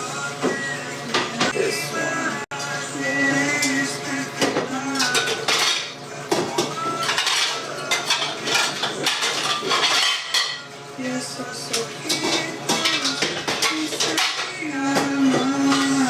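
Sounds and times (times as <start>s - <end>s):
dishes and cutlery clattering: 3.6s - 10.7s, 11.7s - 16.0s.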